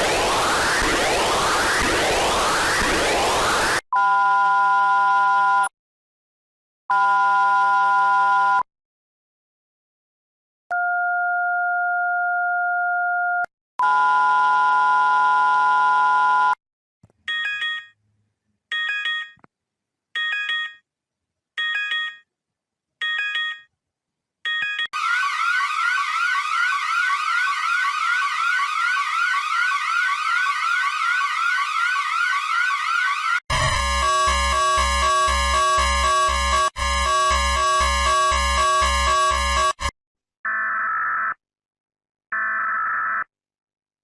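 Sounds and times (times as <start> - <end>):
rising siren-like sweep: 0.0 - 3.8, 25.0 - 39.8
electronic chord tone: 33.5 - 39.8.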